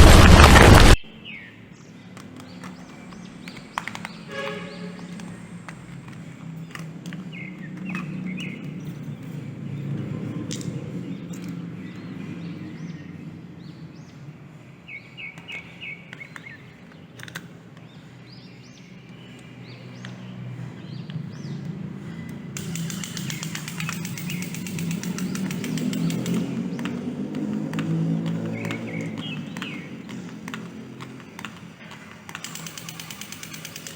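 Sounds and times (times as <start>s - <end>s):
bird chirps: 17.9s - 33.9s
fast high rattling buzz: 22.6s - 26.9s, 32.4s - 33.9s.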